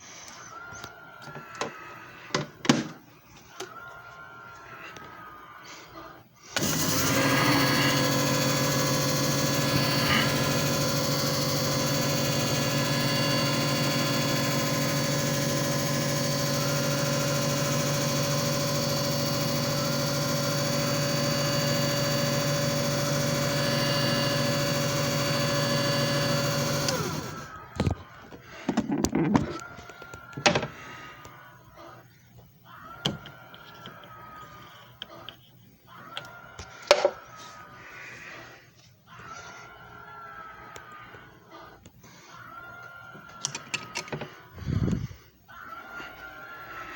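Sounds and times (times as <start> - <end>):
machine motor humming and whining: 6.6 - 28.0.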